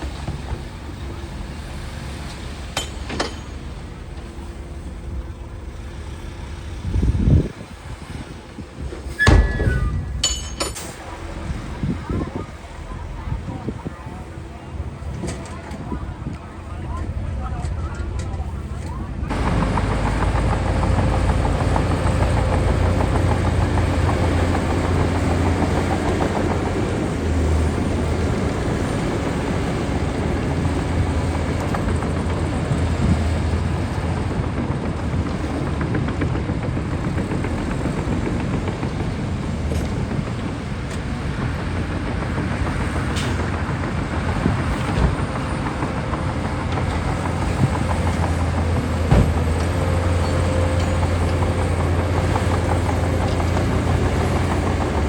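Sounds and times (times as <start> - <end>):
bulldozer diesel engine running: 0.0 - 55.0
sharp metal clanks: 2.7 - 3.9, 9.1 - 11.2.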